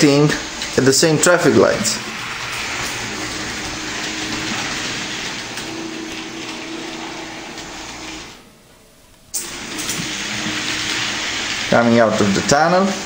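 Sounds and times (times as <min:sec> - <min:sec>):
model train motor whirring: 0:09.4 - 0:12.8.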